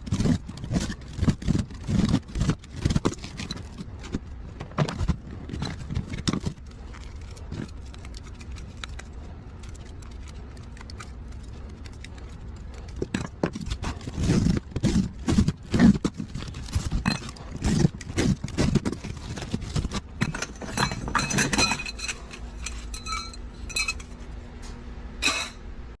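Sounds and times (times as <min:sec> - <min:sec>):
steady low hum: 0:00.0 - 0:26.0
metal pieces clinking and knocking: 0:20.2 - 0:24.2.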